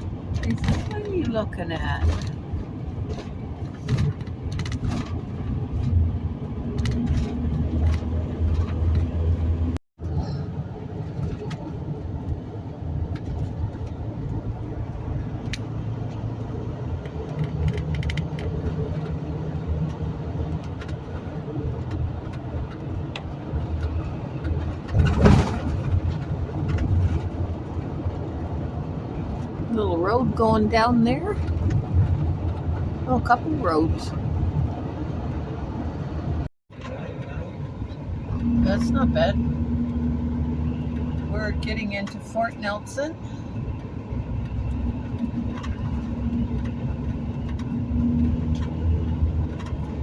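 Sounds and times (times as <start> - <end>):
road and engine noise inside vehicle: 0.0 - 50.0.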